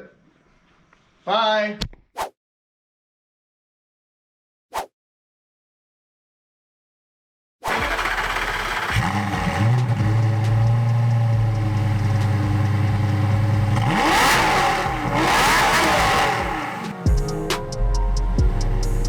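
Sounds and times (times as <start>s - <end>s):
car engine revving: 7.7s - 17.0s.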